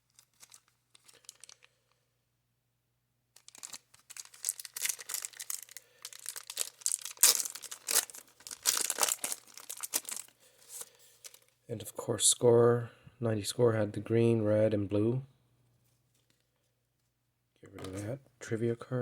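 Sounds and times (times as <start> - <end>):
faint paper rustling: 0.0 - 2.0, 3.4 - 11.6
wax paper wrapper tearing: 0.1 - 1.7, 3.4 - 11.4.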